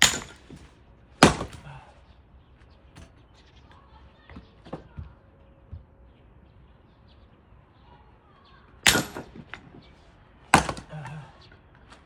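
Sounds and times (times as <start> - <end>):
axe splitting log: 0.0 - 1.8, 8.9 - 9.7, 10.5 - 11.2
split wood pieces falling: 0.0 - 1.8, 8.8 - 9.9, 10.5 - 11.2.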